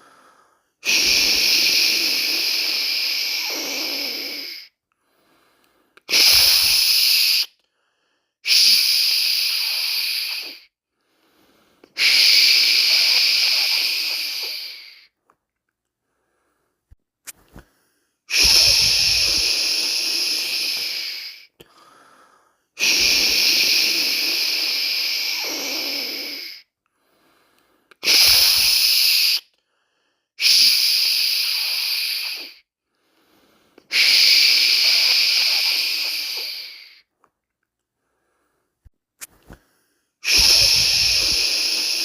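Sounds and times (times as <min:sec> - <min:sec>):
person shushing: 0:00.8 - 0:04.7, 0:06.1 - 0:07.5, 0:12.0 - 0:15.1, 0:18.3 - 0:21.5, 0:33.9 - 0:37.0, 0:40.2 - 0:42.0.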